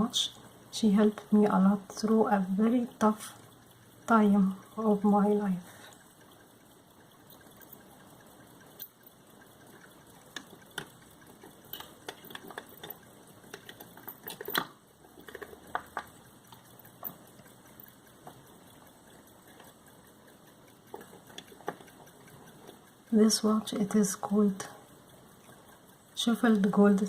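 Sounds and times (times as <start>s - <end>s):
pocket watch clicks and taps: 20.4s - 23.0s.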